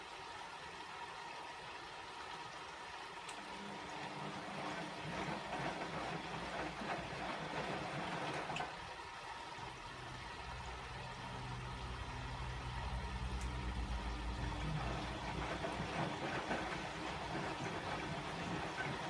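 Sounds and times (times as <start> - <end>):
water rushing: 0.0 - 19.0
washing machine motor humming: 3.2 - 19.0.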